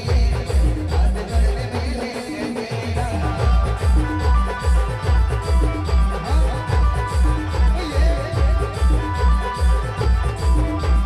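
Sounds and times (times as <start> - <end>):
band playing dance music: 0.0 - 11.0
heavy bass drum beat: 0.0 - 11.0
ornamented melodic lead: 3.1 - 11.0.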